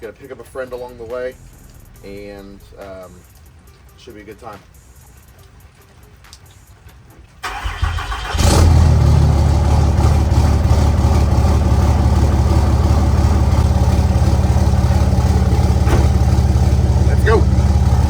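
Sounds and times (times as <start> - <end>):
vehicle engine cranking and idling: 0.1 - 3.5, 7.4 - 18.0.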